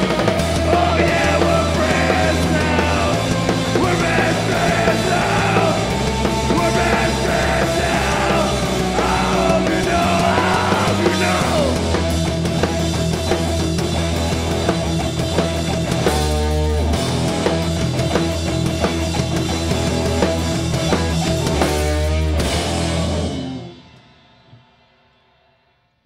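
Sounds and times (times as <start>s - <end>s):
person singing: 0.0s - 12.0s
punk rock band playing live: 0.0s - 24.0s.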